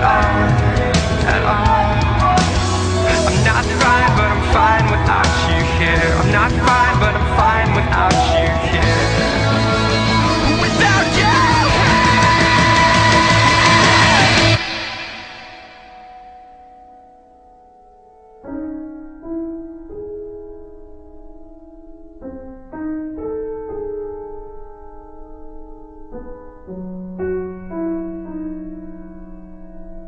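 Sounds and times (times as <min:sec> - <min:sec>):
solo piano playing slow chords: 0:14.6 - 0:30.0.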